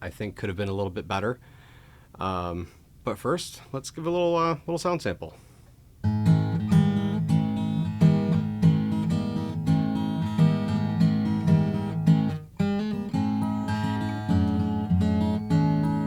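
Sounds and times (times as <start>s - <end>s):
acoustic guitar chords: 6.0s - 16.0s.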